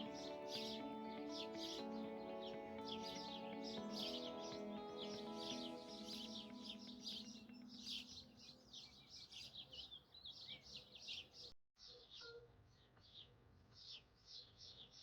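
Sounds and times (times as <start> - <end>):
birds chirping: 0.0 - 11.5.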